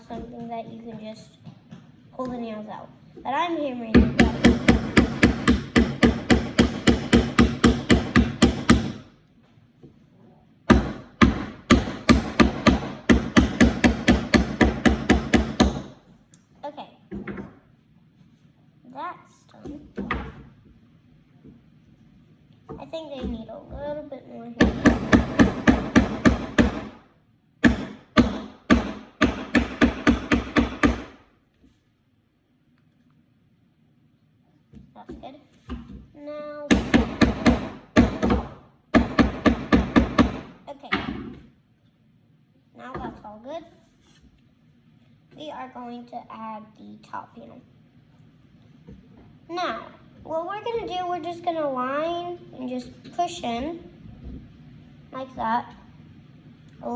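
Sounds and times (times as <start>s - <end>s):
hammer driving nails into wood: 4.0s - 9.1s, 10.7s - 16.0s, 24.6s - 31.2s, 36.7s - 41.4s.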